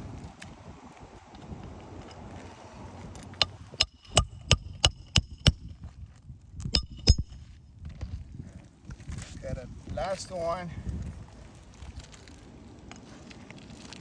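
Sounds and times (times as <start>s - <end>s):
hammer striking nails: 3.4s - 5.7s, 6.6s - 7.4s.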